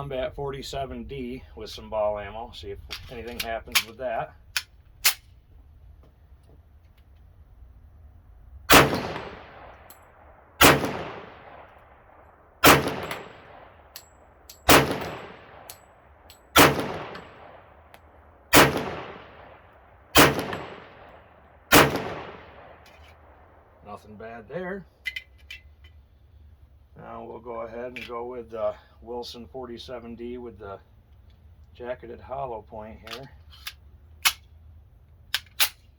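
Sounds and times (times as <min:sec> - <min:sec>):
pistol shots with echo: 0:08.7 - 0:09.9, 0:10.6 - 0:11.7, 0:12.6 - 0:14.0, 0:14.6 - 0:15.8, 0:16.5 - 0:17.9, 0:18.5 - 0:22.8.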